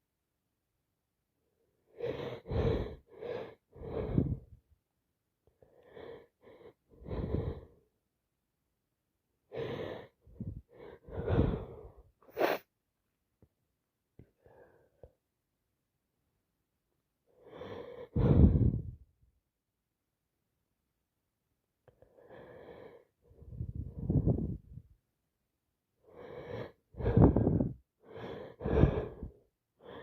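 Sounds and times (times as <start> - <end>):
sniffing and heavy nasal breathing: 11.0 - 12.6.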